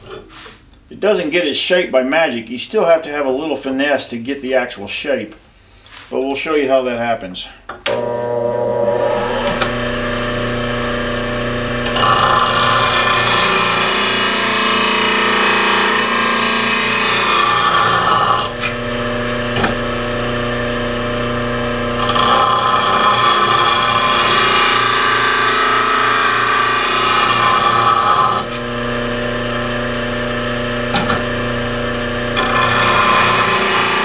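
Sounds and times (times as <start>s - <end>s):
bench grinder humming: 7.9s - 34.0s.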